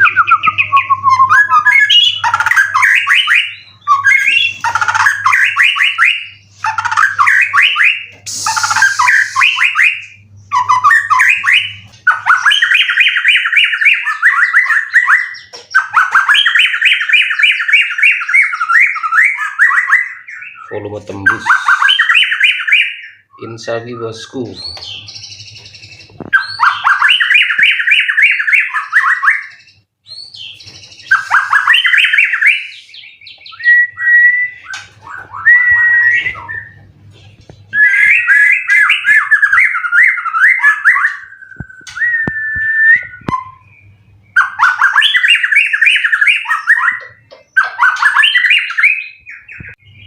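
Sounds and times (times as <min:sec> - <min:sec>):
songbird singing trilled phrases: 0:00.0 - 0:50.0.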